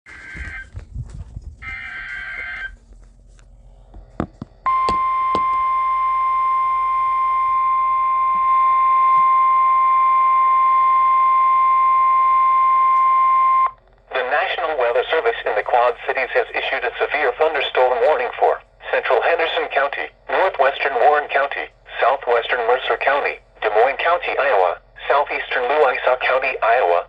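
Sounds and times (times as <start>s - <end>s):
single-tone warning alarm: 0.1s - 0.8s, 1.6s - 2.8s, 4.6s - 27.0s
warbling data screech: 1.6s - 2.7s.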